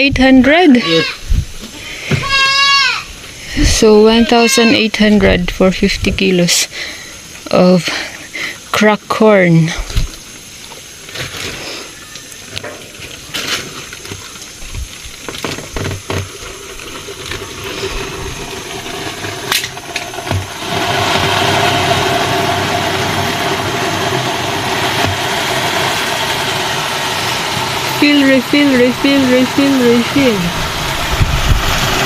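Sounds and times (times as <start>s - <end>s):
corn pouring into plastic container: 12.9s - 32.0s.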